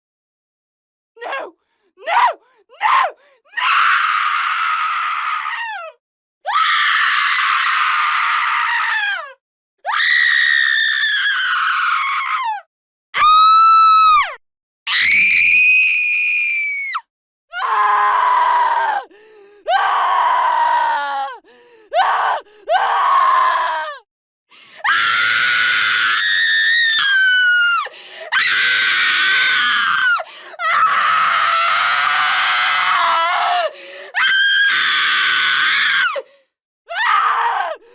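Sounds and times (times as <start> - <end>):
woman screaming: 13.2 - 17.0.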